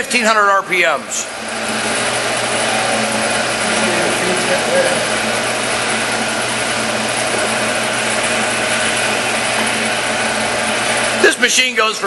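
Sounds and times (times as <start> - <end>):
lathe running: 0.0 - 12.0.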